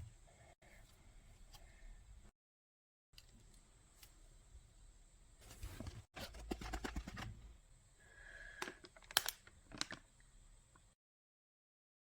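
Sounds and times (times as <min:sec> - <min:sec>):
packaging crinkling and rustling: 0:08.8 - 0:10.1.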